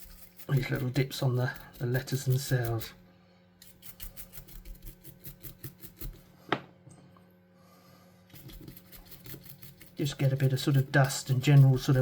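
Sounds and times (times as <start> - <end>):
toothbrush scrubbing plastic: 0.0 - 3.0, 3.6 - 6.3, 8.3 - 12.0.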